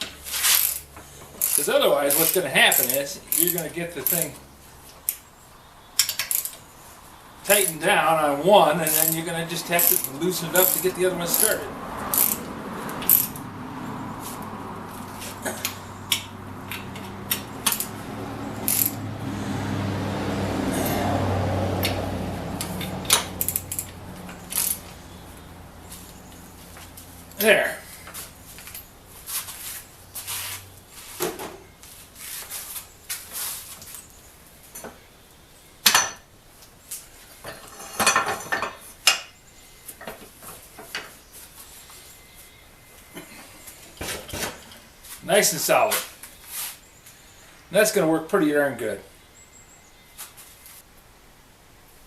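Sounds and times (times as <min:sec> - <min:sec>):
metallic clinks of bolts and wrench: 0:00.5 - 0:04.4, 0:06.0 - 0:06.6, 0:08.8 - 0:13.4, 0:15.6 - 0:17.9, 0:18.7 - 0:19.0, 0:22.6 - 0:24.8
metal tools knocking on steel: 0:37.5 - 0:39.3.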